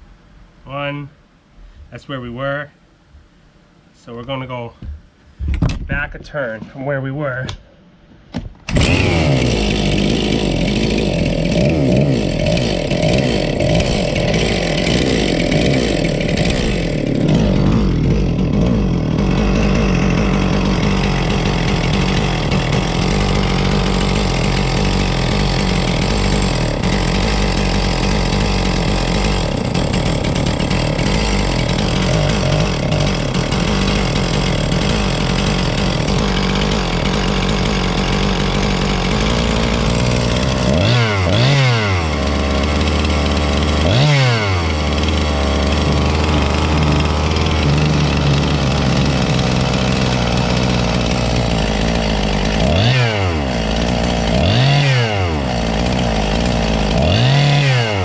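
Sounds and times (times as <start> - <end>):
chainsaw engine running: 8.7 - 58.0.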